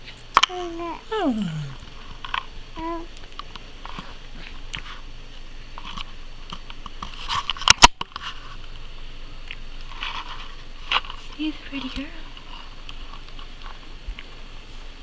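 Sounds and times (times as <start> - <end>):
baby mouth noises and lip smacks: 0.0 - 5.0
baby cooing: 0.1 - 2.0, 2.8 - 3.1.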